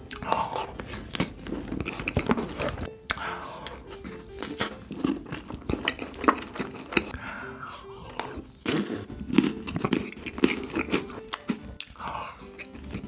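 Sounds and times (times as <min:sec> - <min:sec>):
chocolate being crunched: 0:04.1 - 0:13.0.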